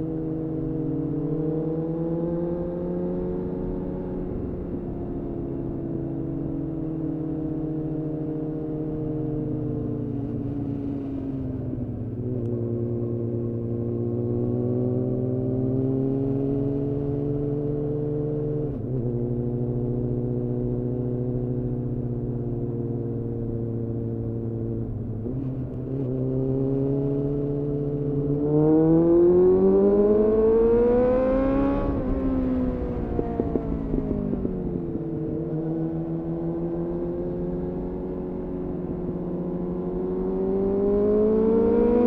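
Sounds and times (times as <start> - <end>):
motorcycle engine revving: 24.2 - 42.0.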